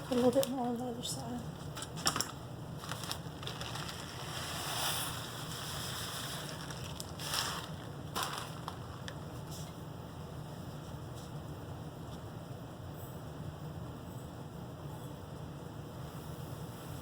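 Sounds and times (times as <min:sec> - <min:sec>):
rice pouring into fabric: 0:02.8 - 0:09.1.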